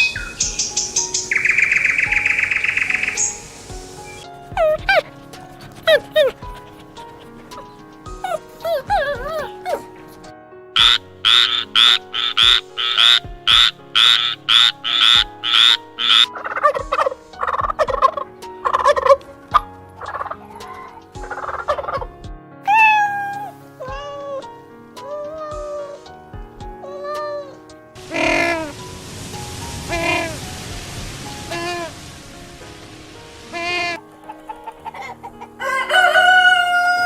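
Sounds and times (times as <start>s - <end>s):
background music: 0.0s - 37.0s
farm fowl calling: 10.8s - 17.6s, 33.5s - 37.0s.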